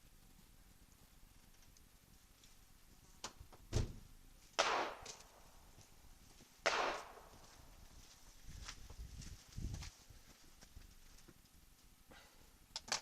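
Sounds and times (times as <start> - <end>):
pistol shots with echo: 4.6 - 5.4, 6.6 - 7.4.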